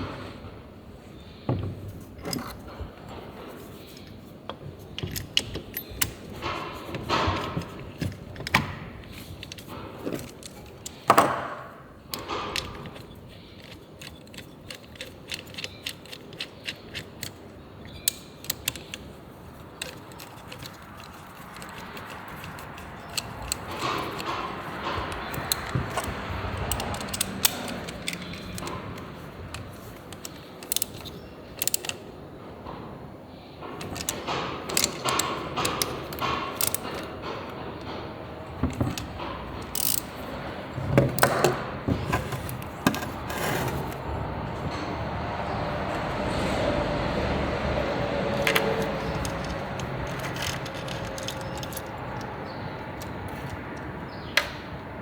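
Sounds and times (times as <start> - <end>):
rough scraping: 41.9 - 44.3
metal clatter: 47.8 - 54.0
metal clinks and taps: 48.2 - 53.9.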